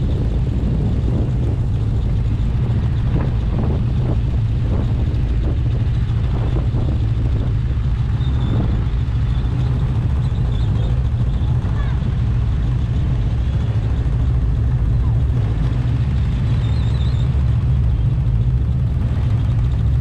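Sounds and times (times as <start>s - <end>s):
snowmobile engine running: 0.0s - 20.0s.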